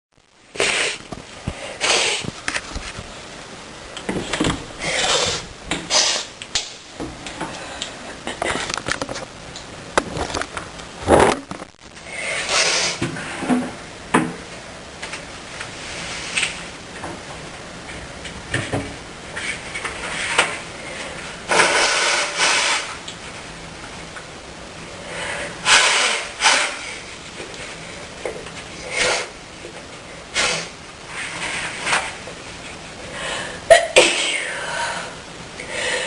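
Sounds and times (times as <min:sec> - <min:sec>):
woman sniffing and snuffling: 0:00.6 - 0:01.0, 0:01.6 - 0:02.3, 0:04.8 - 0:06.3, 0:12.1 - 0:13.0, 0:28.8 - 0:29.3, 0:30.4 - 0:31.7.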